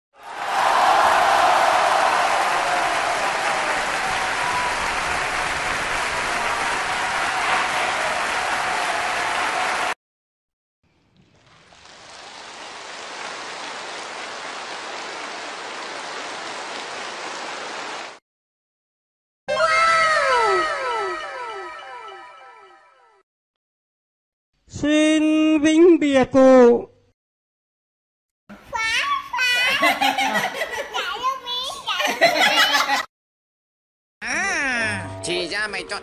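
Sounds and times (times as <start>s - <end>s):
crowd applause: 0.2s - 10.0s.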